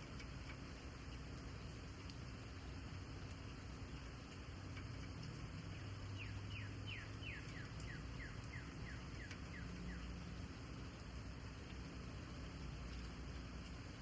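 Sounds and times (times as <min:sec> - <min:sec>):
low steady hum: 0:00.0 - 0:14.0
bird chirping: 0:05.8 - 0:10.2.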